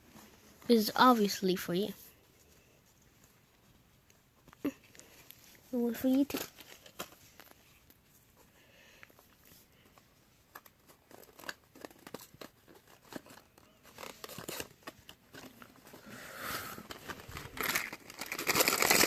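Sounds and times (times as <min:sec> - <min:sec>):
wrapping paper tearing and crinkling: 0:10.4 - 0:19.0.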